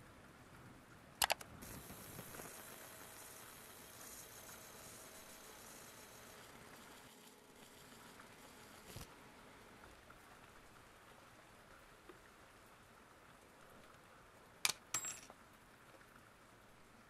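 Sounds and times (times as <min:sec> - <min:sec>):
sharp metallic clicks: 0:01.2 - 0:01.5
faint hiss: 0:01.5 - 0:14.6.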